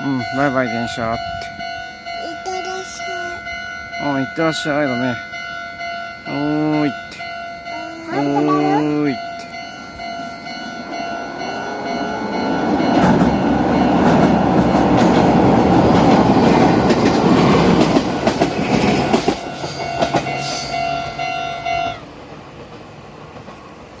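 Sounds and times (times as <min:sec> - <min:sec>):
level crossing bells ringing: 0:00.0 - 0:14.0, 0:19.4 - 0:22.0
train wheels rushing on rails: 0:08.2 - 0:24.0
wheels clacking over rail joints: 0:12.5 - 0:24.0.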